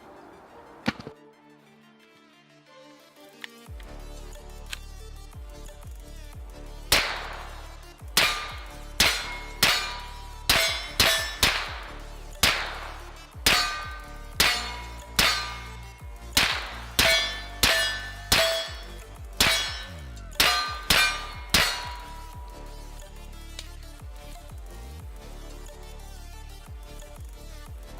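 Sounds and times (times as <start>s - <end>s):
rifle shots: 6.9s - 22.6s
bullets ringing on steel targets: 6.9s - 23.8s.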